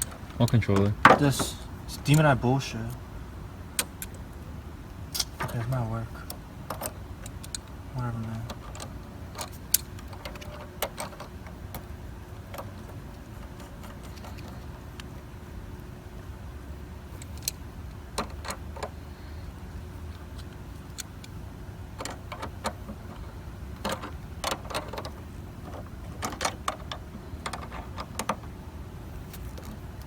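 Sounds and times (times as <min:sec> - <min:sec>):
low steady rumble: 0:00.0 - 0:30.0
small parts and tools clicking: 0:05.1 - 0:05.6, 0:06.2 - 0:15.2, 0:17.2 - 0:19.0, 0:22.0 - 0:28.5.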